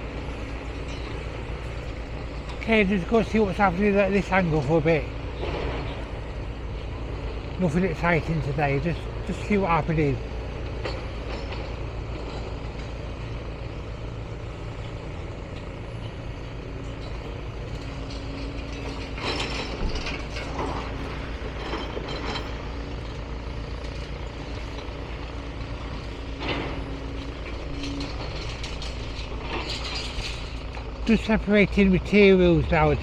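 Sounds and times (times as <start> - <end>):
diesel engine running: 0.0 - 33.0
clanks and crashes of material: 27.8 - 30.6.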